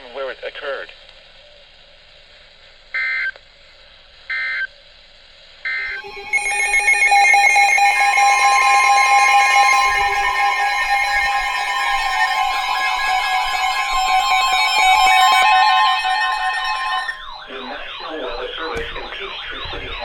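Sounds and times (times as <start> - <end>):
low radio hiss: 0.0 - 5.8
digital data tone bursts: 5.7 - 20.0
steady music: 5.8 - 20.0.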